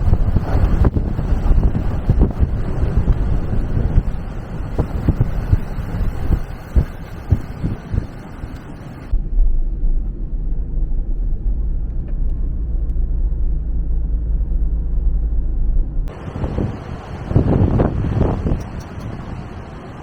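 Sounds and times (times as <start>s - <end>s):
deep steady rumble: 0.0s - 20.0s
strong wind buffeting microphone: 0.0s - 20.0s.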